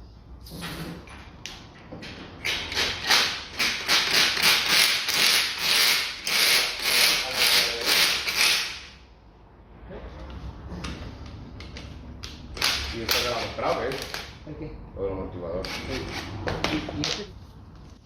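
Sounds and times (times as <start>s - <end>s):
hand tool ratcheting strokes: 2.4s - 8.9s.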